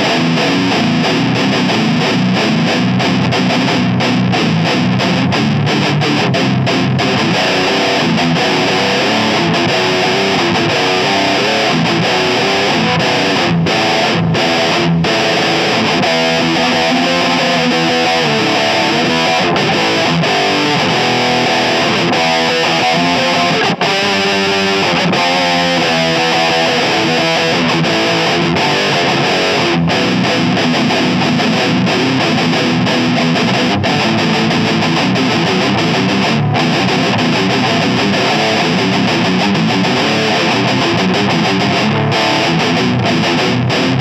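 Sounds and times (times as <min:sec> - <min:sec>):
distorted electric guitar riffs: 0:00.0 - 0:44.0.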